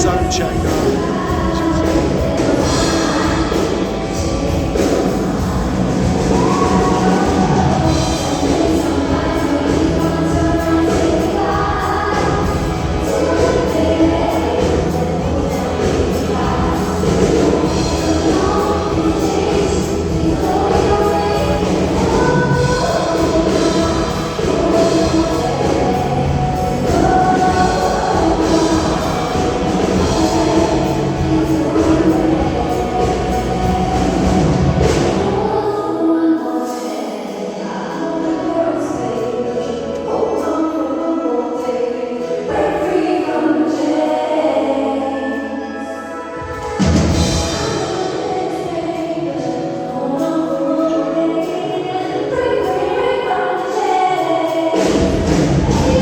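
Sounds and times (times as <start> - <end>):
amplified music: 0.0 - 3.2
group of voices singing: 0.0 - 56.0.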